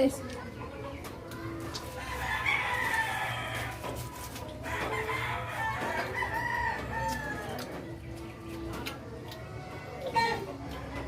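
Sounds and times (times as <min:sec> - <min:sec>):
rooster crowing: 0:02.1 - 0:03.8, 0:04.6 - 0:07.6.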